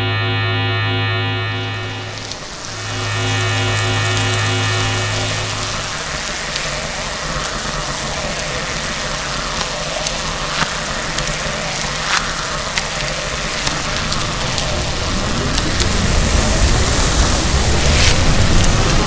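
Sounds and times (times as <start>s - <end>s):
low hum: 0.0s - 9.4s
sharp crackles and pops: 1.6s - 19.0s
rushing rumble of explosion: 13.6s - 19.0s.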